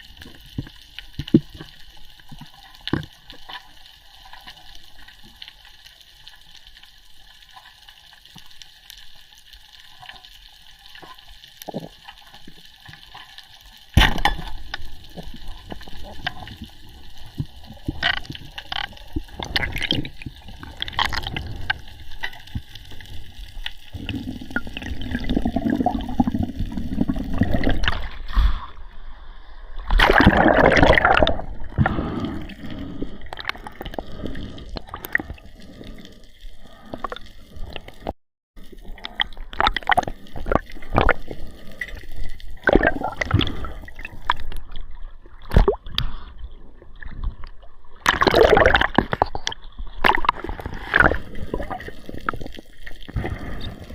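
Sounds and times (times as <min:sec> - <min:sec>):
water gurgling and sloshing: 0:09.8 - 0:53.9
water splashing: 0:11.0 - 0:46.3, 0:47.0 - 0:53.9.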